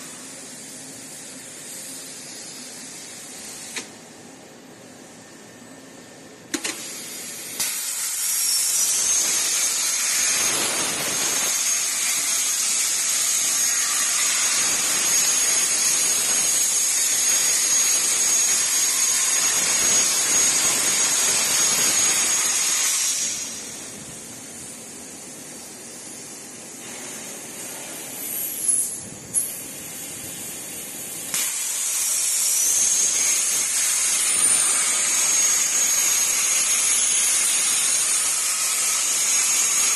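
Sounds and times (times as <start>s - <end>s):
plasma torch cutting hiss: 0.0s - 4.0s, 6.5s - 39.9s
high whine: 8.8s - 26.7s.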